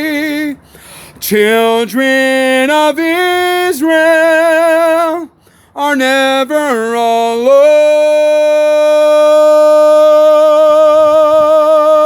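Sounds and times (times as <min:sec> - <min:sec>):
person singing a long note: 0:07.3 - 0:12.0.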